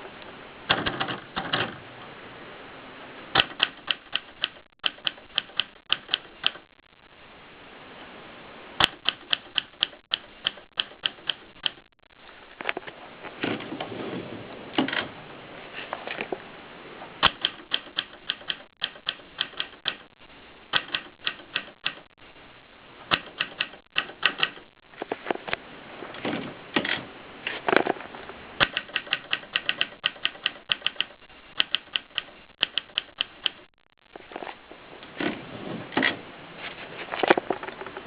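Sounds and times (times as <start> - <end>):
typewriter key strikes: 20.7 - 22.1, 23.1 - 24.6, 28.6 - 33.6.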